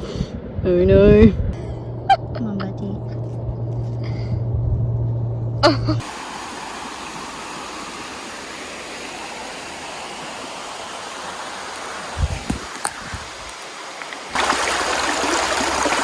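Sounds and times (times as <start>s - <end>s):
water rushing over rocks: 6.0s - 16.0s.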